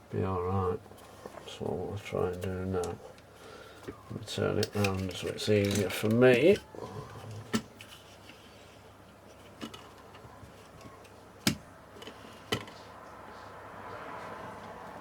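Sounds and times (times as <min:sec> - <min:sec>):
sharp clicks and knocks of handling: 0:02.3 - 0:06.7.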